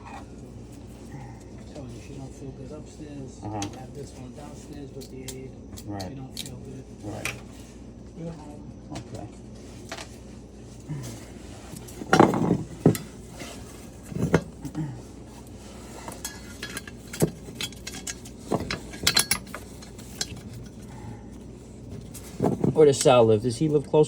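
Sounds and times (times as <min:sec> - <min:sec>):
metal clinks and clanks: 0:16.1 - 0:21.0.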